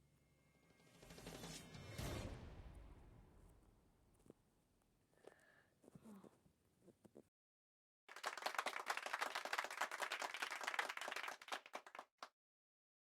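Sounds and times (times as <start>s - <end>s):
applause: 8.1s - 12.4s.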